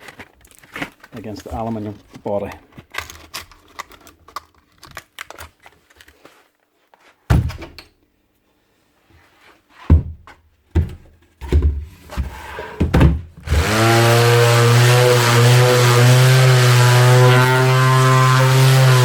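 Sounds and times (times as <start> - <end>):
orbital sander running: 13.5 - 19.0.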